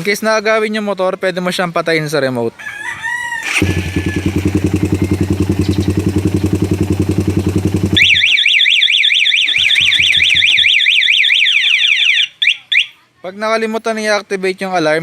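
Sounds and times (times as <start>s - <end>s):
motorcycle engine idling: 3.5s - 10.7s
alarm siren sweeping up and down: 3.5s - 12.9s.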